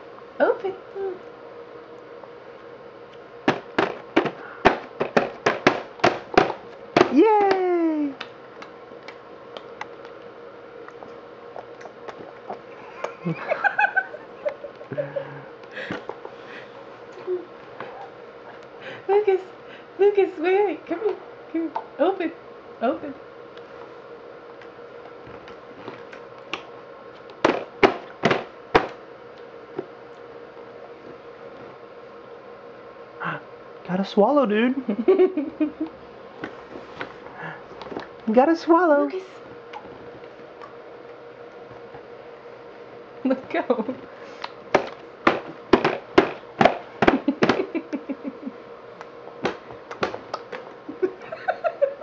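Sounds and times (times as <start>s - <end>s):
baby smacking lips: 49.9s - 50.6s.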